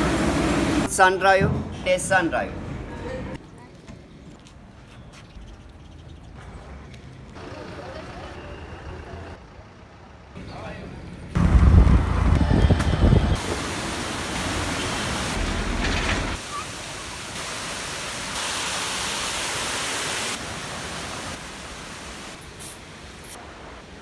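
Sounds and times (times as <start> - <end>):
heavy low rumble: 11.4 - 13.4.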